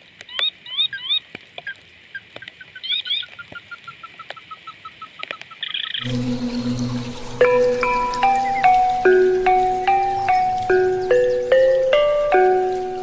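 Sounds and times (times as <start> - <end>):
rising whistled bird calls: 5.6 - 12.2.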